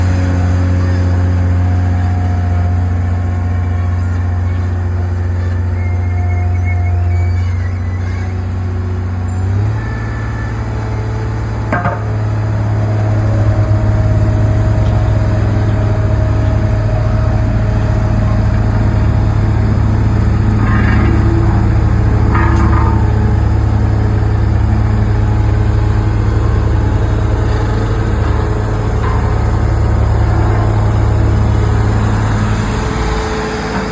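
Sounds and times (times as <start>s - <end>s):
excavator diesel engine humming: 0.0s - 33.9s
short high squeaks: 5.2s - 10.6s.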